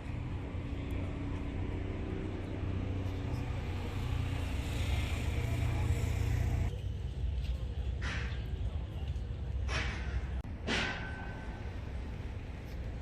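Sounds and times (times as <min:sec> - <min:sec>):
vehicle passing with tyre hiss: 0:01.2 - 0:06.7.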